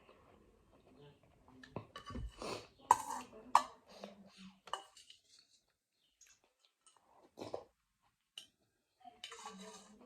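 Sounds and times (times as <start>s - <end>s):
utensils clinking against bowl: 9.2s - 10.0s.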